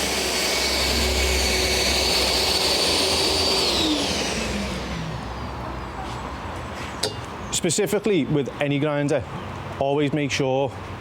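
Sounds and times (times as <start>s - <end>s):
floor grinder whine: 0.0s - 5.9s
dust extractor noise: 0.0s - 6.1s.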